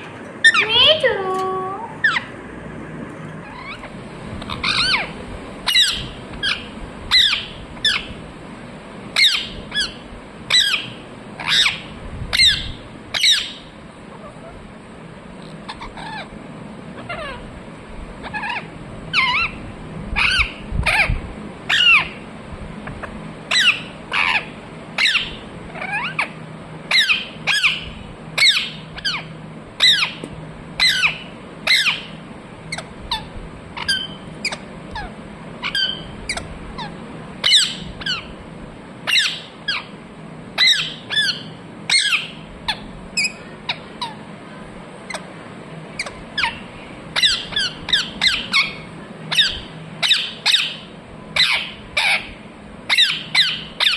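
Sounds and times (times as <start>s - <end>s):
parrot sharp calls: 3.4s - 8.1s, 23.5s - 30.2s, 30.8s - 38.4s, 39.0s - 39.9s, 40.6s - 44.2s, 46.0s - 52.3s, 52.9s - 53.9s.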